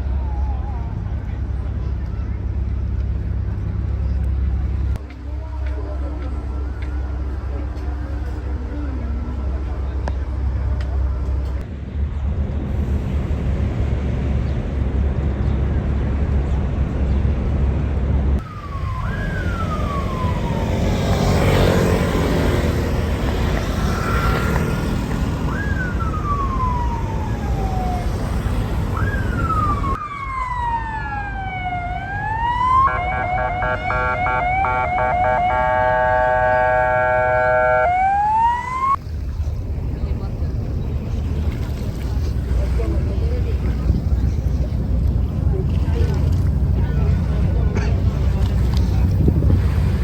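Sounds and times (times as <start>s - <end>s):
emergency vehicle siren: 0.0s - 1.0s, 18.4s - 39.0s
street traffic: 0.0s - 50.0s.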